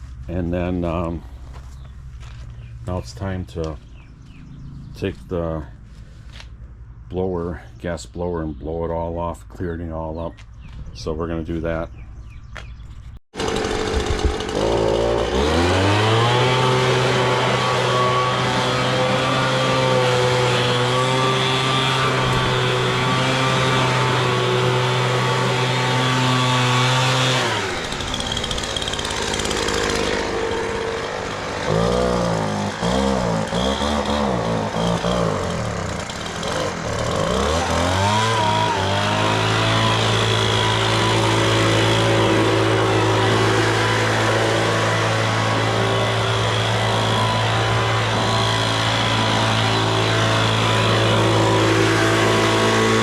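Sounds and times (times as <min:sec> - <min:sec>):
leaf blower engine revving: 0:13.3 - 0:53.0.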